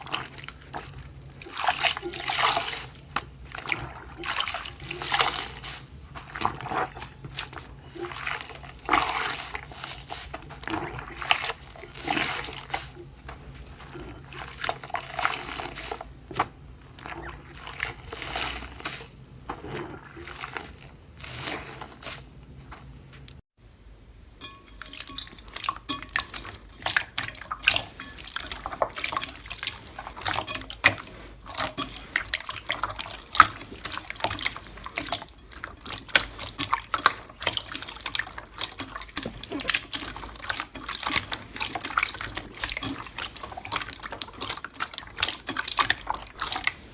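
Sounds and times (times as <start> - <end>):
slime squelching by hand: 0.0 - 23.4, 24.7 - 46.9.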